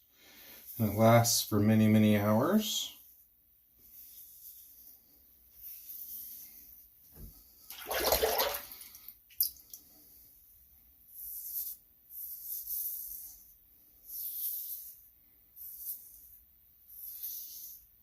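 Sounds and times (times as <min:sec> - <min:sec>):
water splashing: 0:07.7 - 0:08.9.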